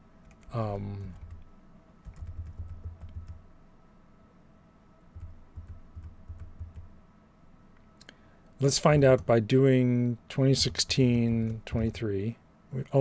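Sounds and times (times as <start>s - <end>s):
computer keyboard typing: 0.2s - 1.4s, 2.0s - 3.4s, 5.2s - 6.9s, 11.2s - 12.0s.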